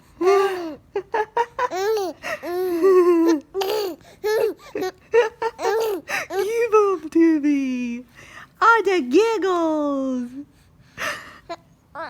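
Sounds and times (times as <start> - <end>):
baby boy giggling: 0.2 - 6.5.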